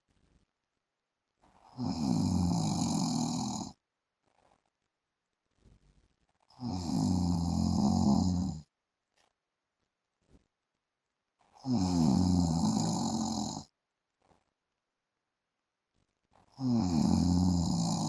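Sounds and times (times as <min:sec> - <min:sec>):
man snoring: 0:01.7 - 0:03.8, 0:06.6 - 0:08.6, 0:11.6 - 0:13.7, 0:16.6 - 0:18.0.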